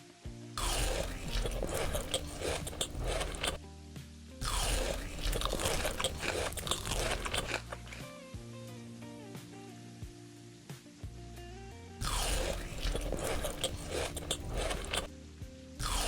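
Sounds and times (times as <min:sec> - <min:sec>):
soft background music: 0:00.0 - 0:16.0
crunching crisp food: 0:00.6 - 0:03.6, 0:04.4 - 0:08.1, 0:12.0 - 0:15.1, 0:15.8 - 0:16.0.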